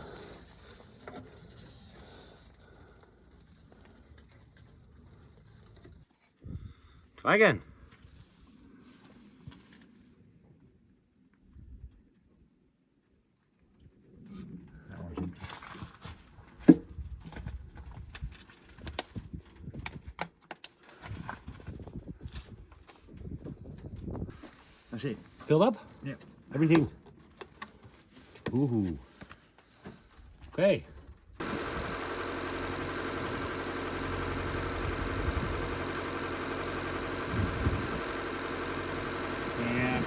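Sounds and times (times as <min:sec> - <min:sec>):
car engine idling: 0:31.4 - 0:40.0.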